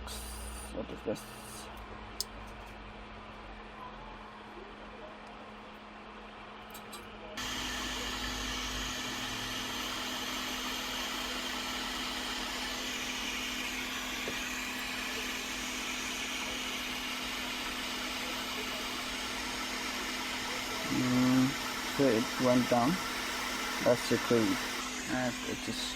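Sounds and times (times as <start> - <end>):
hot air gun blowing with hiss: 7.4 - 25.9.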